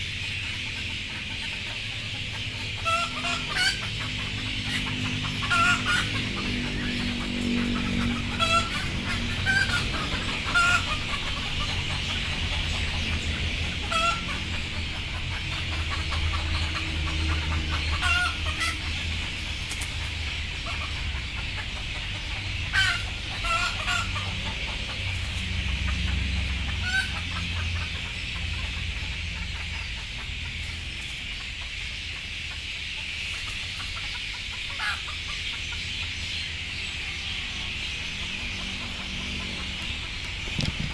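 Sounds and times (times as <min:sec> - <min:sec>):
chickens clucking: 0:00.0 - 0:40.9.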